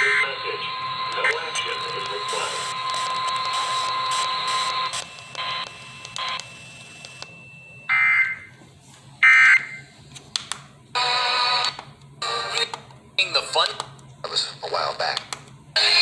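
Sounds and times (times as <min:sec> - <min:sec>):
data tone bursts: 0:00.0 - 0:08.4.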